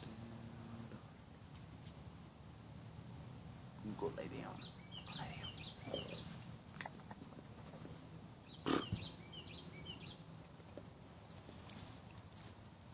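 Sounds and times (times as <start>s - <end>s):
bird chirping: 2.7s - 11.5s.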